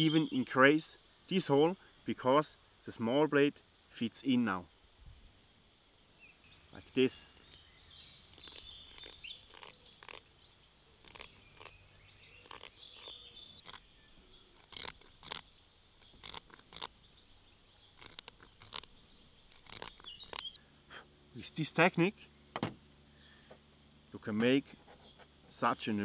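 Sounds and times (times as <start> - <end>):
knife scraping wood: 6.8 - 20.6.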